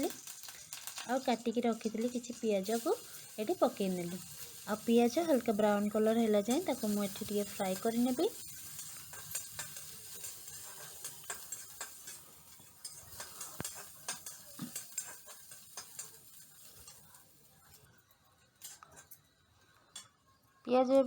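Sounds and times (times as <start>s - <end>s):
onions sizzling in oil: 0.0s - 20.1s
spatula scraping a pan: 2.6s - 17.9s.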